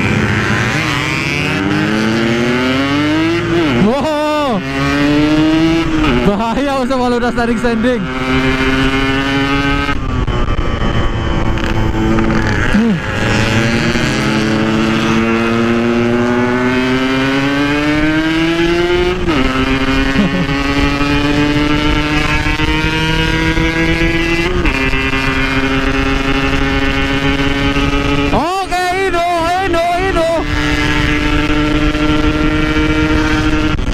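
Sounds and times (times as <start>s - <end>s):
two-stroke motorcycle engine revving: 0.0s - 33.9s.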